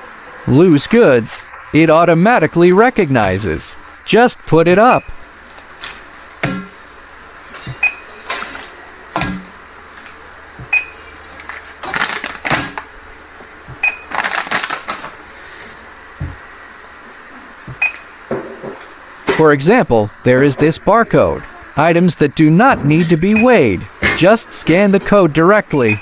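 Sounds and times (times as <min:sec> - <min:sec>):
short high beeps: 0:23.2 - 0:23.7, 0:25.7 - 0:26.0.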